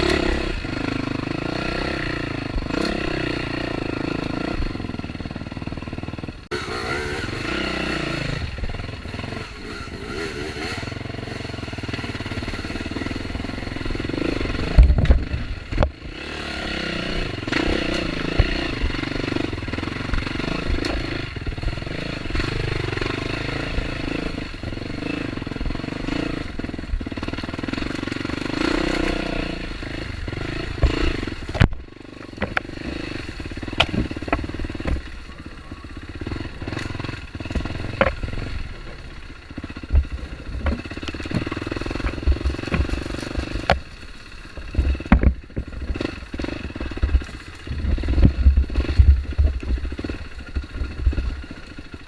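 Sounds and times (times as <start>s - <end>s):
motorcycle engine revving: 0.0s - 52.0s
bike clattering over rough ground: 29.8s - 52.0s.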